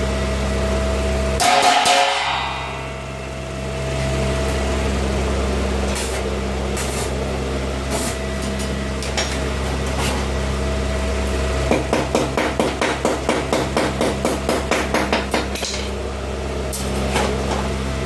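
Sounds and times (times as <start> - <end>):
electrical hum: 0.0 - 18.0.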